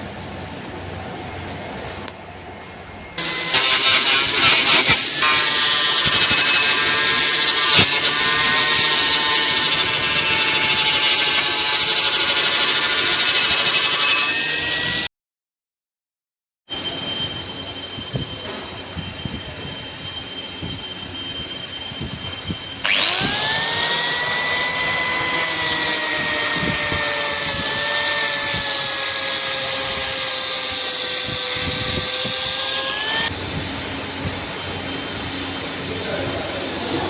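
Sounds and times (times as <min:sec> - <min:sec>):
electric polisher whining: 0:03.2 - 0:15.1, 0:20.7 - 0:37.0.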